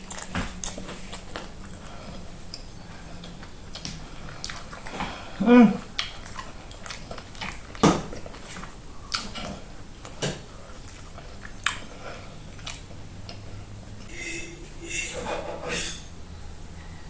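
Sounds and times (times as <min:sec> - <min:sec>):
person chewing food: 0:00.0 - 0:14.2.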